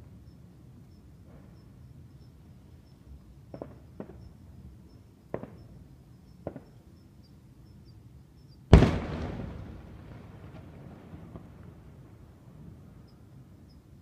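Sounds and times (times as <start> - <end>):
distant fireworks bangs: 3.5 - 4.4, 5.3 - 5.8, 6.4 - 6.8, 8.7 - 12.2.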